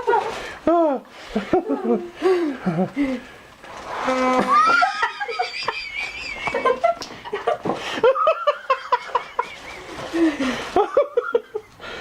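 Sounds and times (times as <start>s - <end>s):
people laughing hard: 1.3s - 3.3s, 4.5s - 11.8s.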